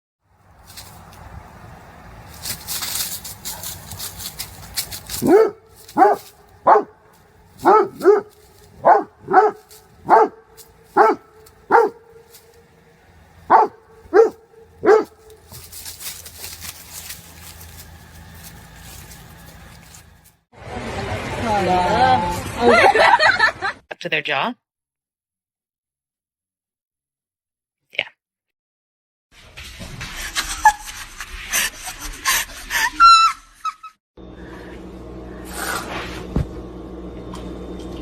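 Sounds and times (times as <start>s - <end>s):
dog barking: 3.4s - 4.2s, 5.1s - 12.8s, 13.4s - 15.7s.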